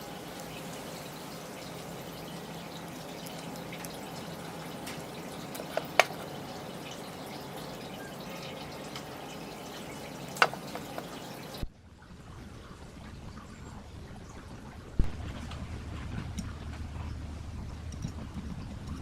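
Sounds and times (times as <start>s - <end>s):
running water: 0.0s - 19.0s.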